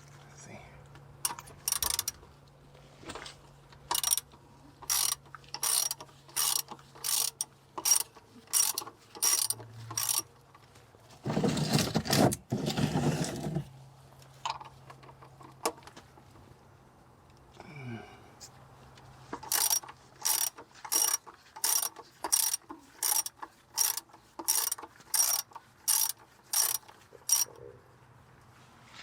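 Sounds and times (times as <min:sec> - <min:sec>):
ratchet wrench clicking: 0:01.2 - 0:02.2, 0:03.9 - 0:10.3, 0:19.4 - 0:27.6.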